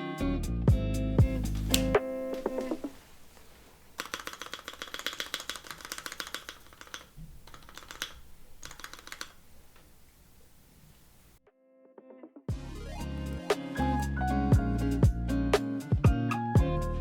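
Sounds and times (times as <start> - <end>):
keyboard parts clicking: 1.4 - 3.0, 3.9 - 9.9.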